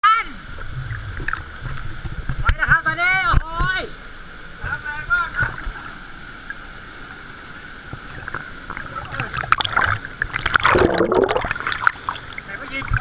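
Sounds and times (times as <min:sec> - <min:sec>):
water splashing and rushing: 0:04.5 - 0:13.0.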